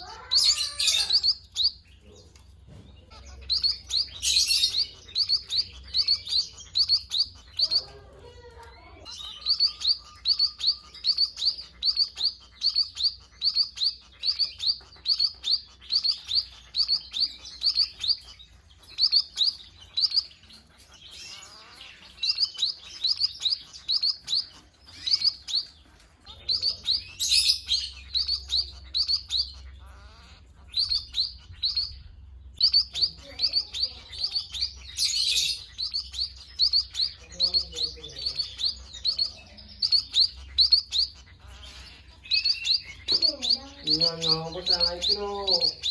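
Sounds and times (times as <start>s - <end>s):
munias chirping: 0.0s - 45.9s.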